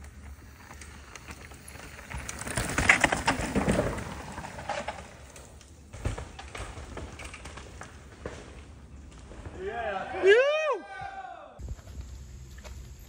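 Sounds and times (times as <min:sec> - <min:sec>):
bike rattles and knocks: 0:00.0 - 0:09.8
bike tyres on dirt: 0:00.0 - 0:13.0.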